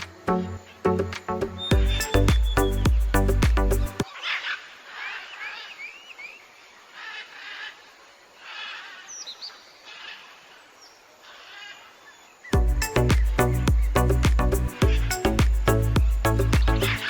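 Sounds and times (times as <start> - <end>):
small birds chirping: 1.3 - 4.2, 12.0 - 17.0
high whistled bird notes: 1.6 - 4.0, 12.6 - 17.0.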